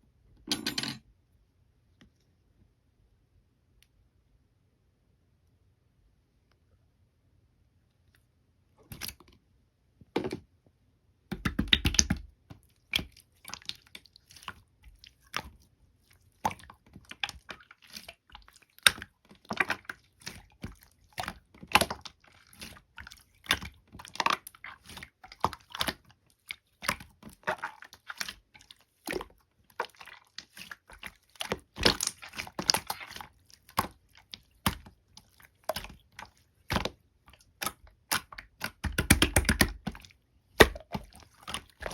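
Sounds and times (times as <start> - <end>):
slime squishing with sticky pops: 11.3 - 41.9.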